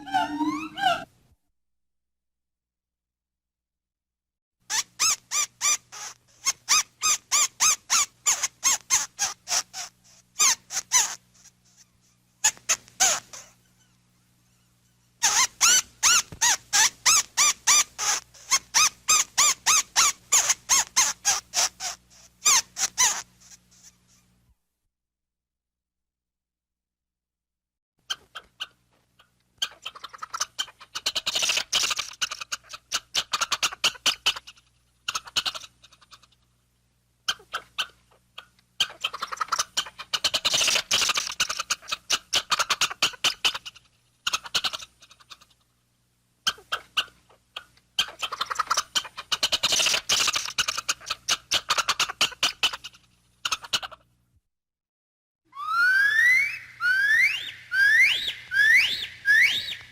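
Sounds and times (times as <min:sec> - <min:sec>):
monkey chattering: 0:00.0 - 0:01.1, 0:28.1 - 0:36.3, 0:37.3 - 0:45.6, 0:46.5 - 0:54.0, 0:56.1 - 0:59.9.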